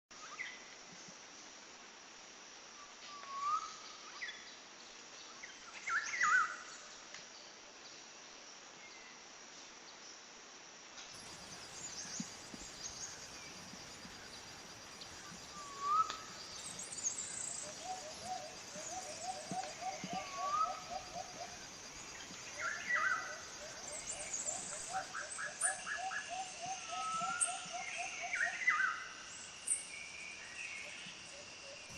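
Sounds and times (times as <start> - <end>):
high hiss of insects: 0.2 - 31.9
birds chirping: 11.2 - 28.0.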